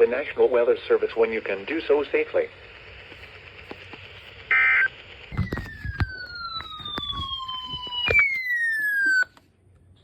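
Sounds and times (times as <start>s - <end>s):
shrill data tones: 0.0s - 9.3s
siren sliding in pitch: 4.5s - 9.3s.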